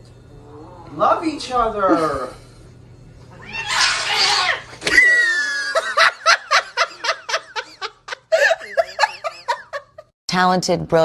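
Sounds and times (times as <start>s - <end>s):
person giggling: 4.9s - 10.1s.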